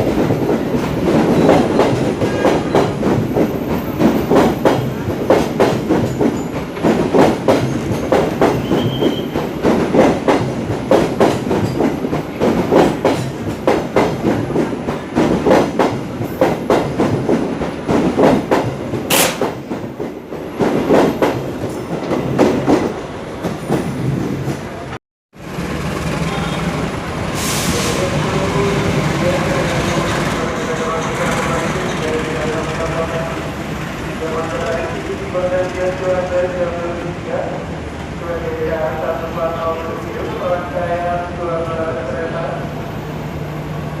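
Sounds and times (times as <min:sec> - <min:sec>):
train wheels clattering: 0:00.0 - 0:24.7
sharp knock: 0:19.1 - 0:19.6.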